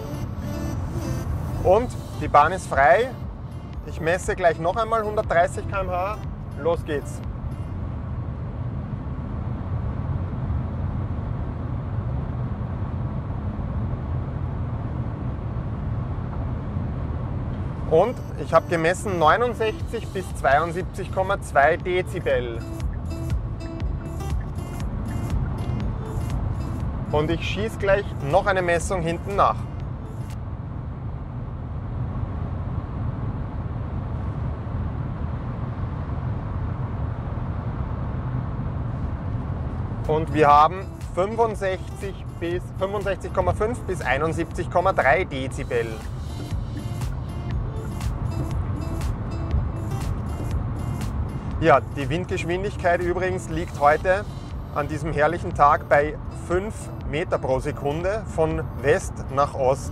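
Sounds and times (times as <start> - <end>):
car cabin road and wind rumble: 0.0 - 59.9.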